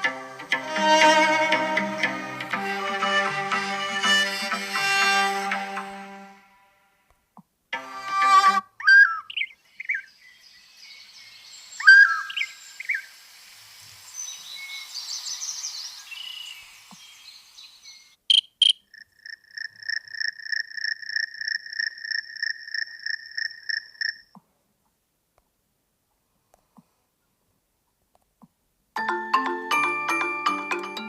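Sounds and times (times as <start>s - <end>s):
chirping ringtone: 29.0s - 31.0s.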